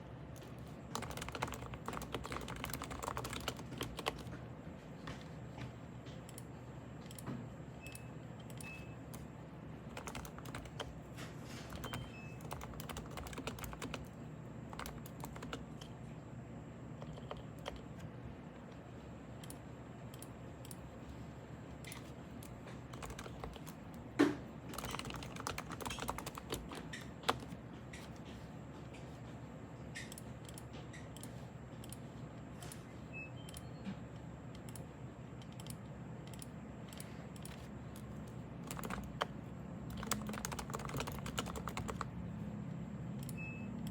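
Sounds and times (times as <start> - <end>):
keyboard typing: 0.4 - 4.4, 6.1 - 16.0, 17.0 - 18.1, 21.7 - 28.4, 34.5 - 42.2.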